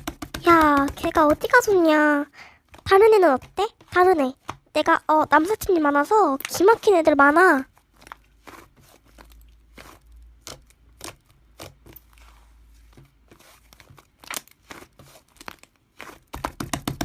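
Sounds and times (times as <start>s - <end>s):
slime crackling and popping: 14.1s - 16.6s.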